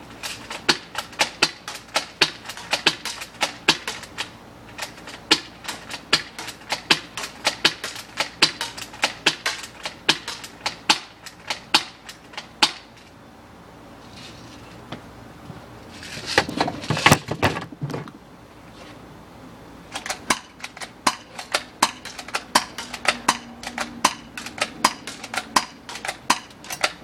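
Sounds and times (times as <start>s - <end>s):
sharp irregular clicks: 0.2s - 12.8s, 19.9s - 27.0s.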